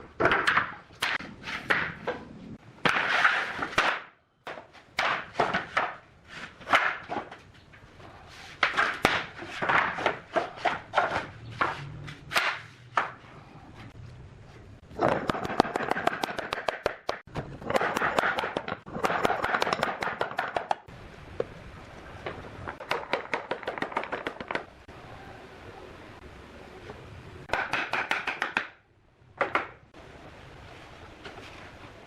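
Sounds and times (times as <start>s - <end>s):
rapid strikes on wood: 15.0s - 20.9s, 22.7s - 24.7s, 27.5s - 28.8s.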